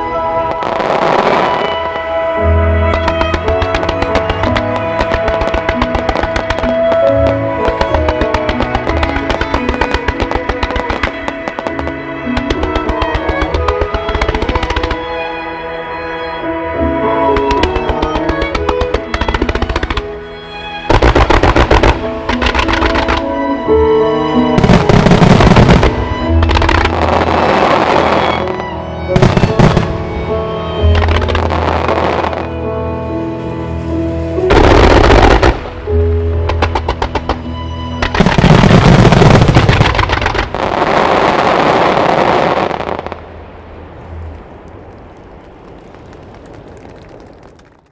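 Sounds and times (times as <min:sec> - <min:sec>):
music with sustained tones: 0:00.0 - 0:45.4
fireworks crackling: 0:00.0 - 0:47.9
fireworks explosions: 0:00.0 - 0:47.9.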